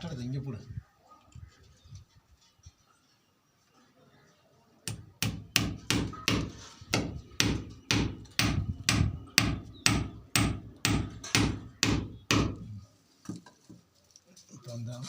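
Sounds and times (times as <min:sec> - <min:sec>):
hammer driving nails: 0:04.9 - 0:12.6.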